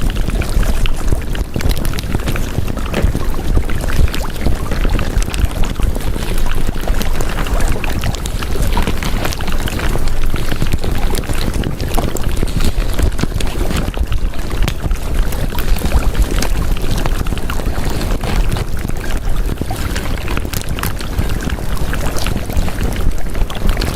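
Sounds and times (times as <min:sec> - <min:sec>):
steady rushing noise with crackles: 0:00.0 - 0:23.9.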